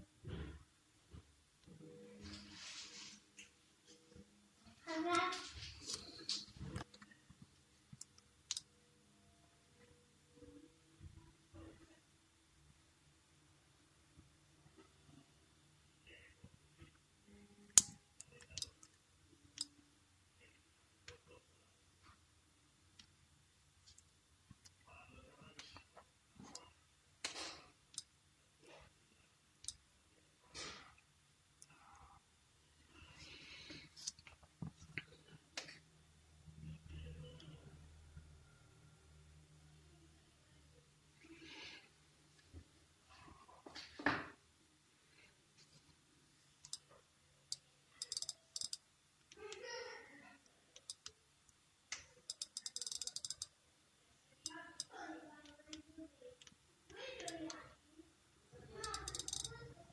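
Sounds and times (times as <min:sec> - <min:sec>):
small sharp clicks: 0:47.5 - 0:49.4, 0:51.9 - 0:53.5, 0:58.8 - 0:59.5.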